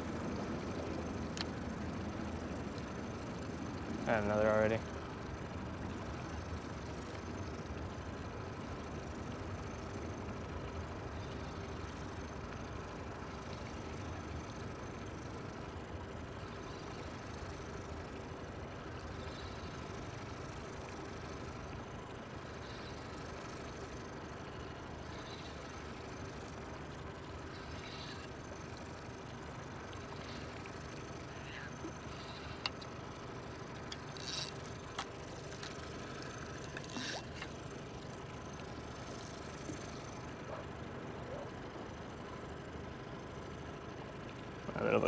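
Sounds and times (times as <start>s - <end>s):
machinery hum: 0.0s - 45.0s
sharp clicks and rattles: 33.7s - 37.6s.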